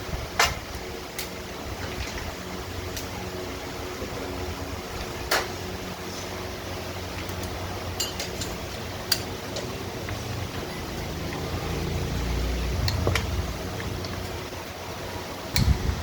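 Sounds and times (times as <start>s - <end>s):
low mechanical hum: 0.0s - 16.0s
sharp clicks and clinks: 7.4s - 9.7s.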